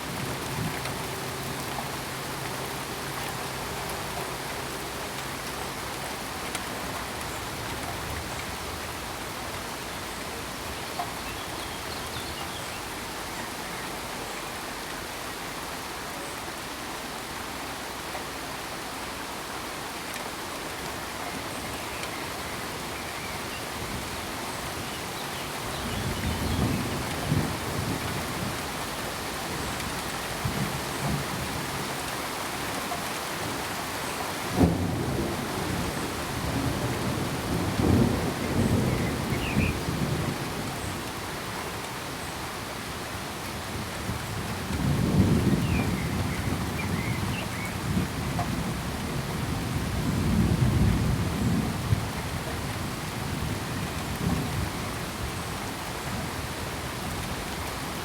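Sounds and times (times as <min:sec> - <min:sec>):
steady rain: 0:00.0 - 0:58.0
low rolling thunder rumbles: 0:34.5 - 0:40.9, 0:43.7 - 0:55.4.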